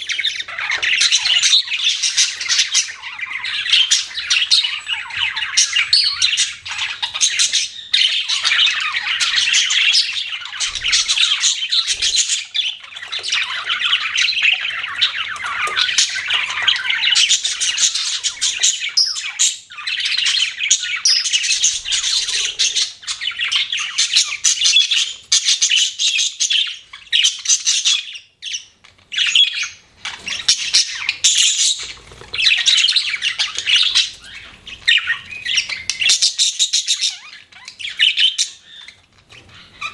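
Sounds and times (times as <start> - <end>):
budgerigars chirping and squawking: 0.0 - 39.9.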